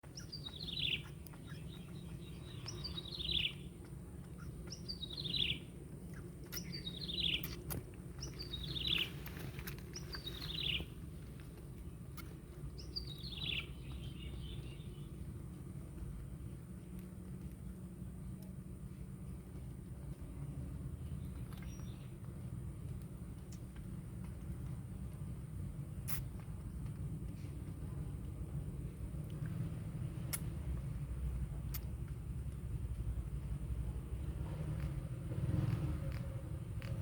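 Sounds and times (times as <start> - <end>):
bird calling: 0.0 - 10.9, 12.1 - 15.1
low background noise: 0.0 - 37.0.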